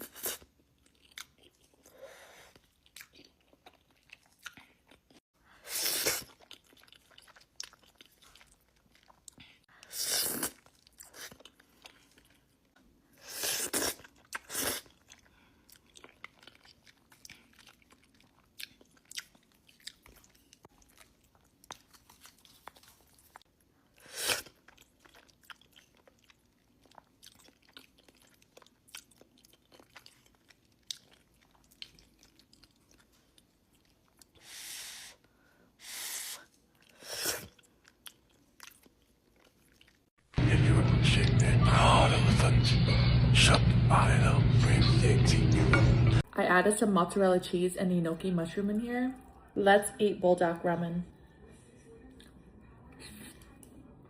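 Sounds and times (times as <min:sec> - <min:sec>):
wet chewing and crunching: 0:00.0 - 0:05.3, 0:06.0 - 0:12.8, 0:13.6 - 0:34.4, 0:36.5 - 0:40.2.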